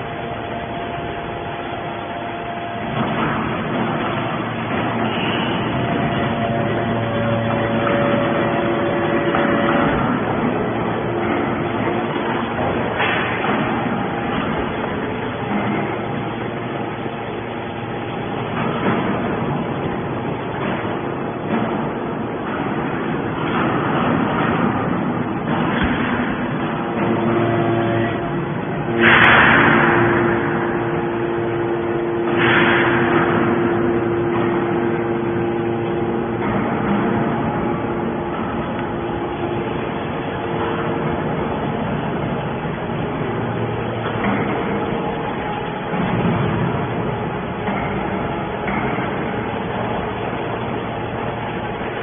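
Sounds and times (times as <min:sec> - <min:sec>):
hydraulic baler machine running: 0:00.0 - 0:52.0.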